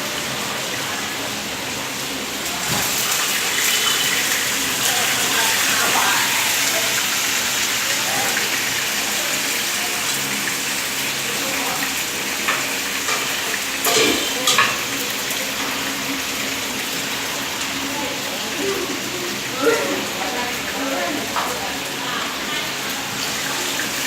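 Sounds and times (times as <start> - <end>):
fish sizzling in oil: 0.0 - 24.0
utensil clattering: 12.5 - 14.9.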